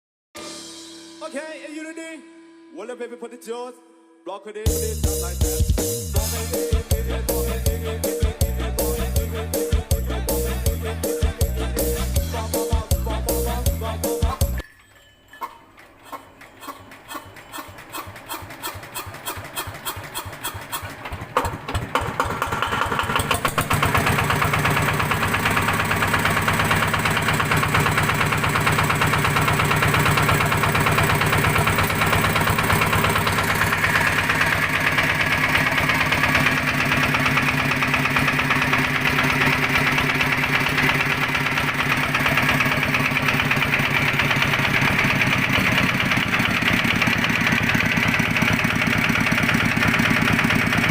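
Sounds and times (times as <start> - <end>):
diesel engine starting and idling: 4.7 - 14.6, 15.8 - 50.9
engine knocking: 16.4 - 50.9.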